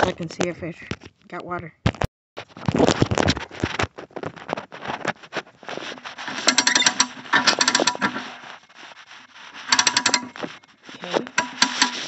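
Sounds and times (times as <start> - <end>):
handling noises with knocks: 0.0 - 12.0
rapid ratchet-like clicking: 6.3 - 8.2, 9.6 - 10.5, 11.3 - 12.0.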